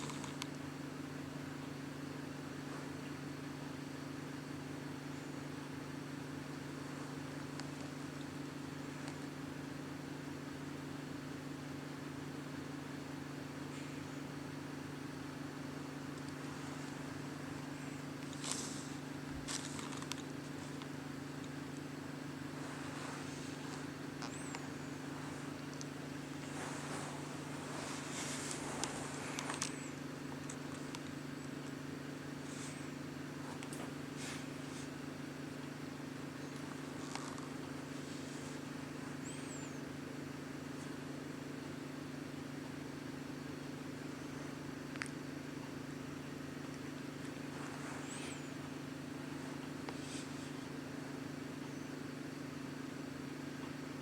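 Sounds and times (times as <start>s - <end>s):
soft hiss: 0.0s - 41.2s
steady low hum: 0.0s - 54.0s.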